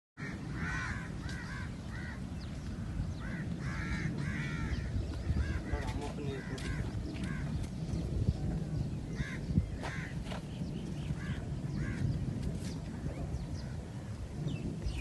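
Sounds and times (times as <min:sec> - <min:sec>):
crows cawing: 0:00.2 - 0:07.6, 0:09.1 - 0:10.2, 0:11.2 - 0:12.1
small birds chirping: 0:00.7 - 0:15.0.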